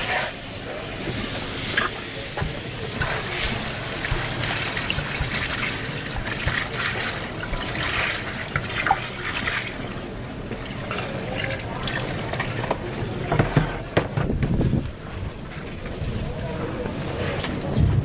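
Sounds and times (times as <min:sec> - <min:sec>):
liquid trickling and splashing: 0:02.8 - 0:12.8.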